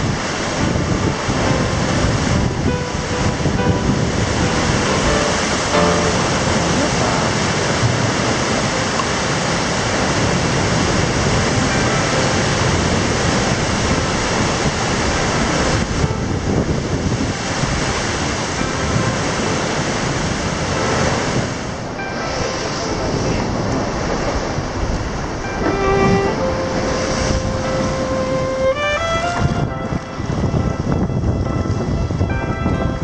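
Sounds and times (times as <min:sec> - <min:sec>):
sea waves and surf washing: 0:00.0 - 0:33.0.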